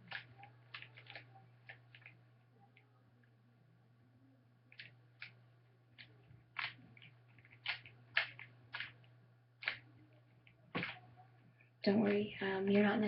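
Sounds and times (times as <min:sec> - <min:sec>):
low electrical hum: 0:00.0 - 0:13.0
plastic puzzle cube clicking: 0:00.1 - 0:02.2, 0:06.0 - 0:09.0, 0:09.6 - 0:11.0.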